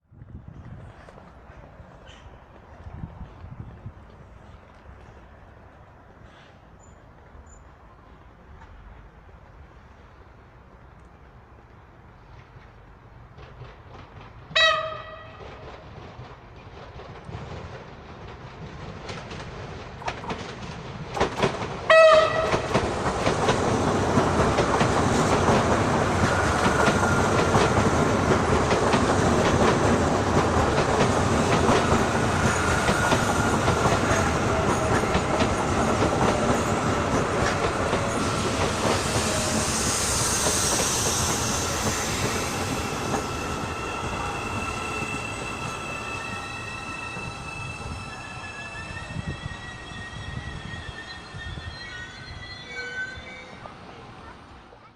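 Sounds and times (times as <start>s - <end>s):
train wheels clattering over rails: 12.3s - 47.3s
train horn blast: 14.5s - 15.5s, 21.9s - 22.7s
high steady tones: 31.3s - 53.7s.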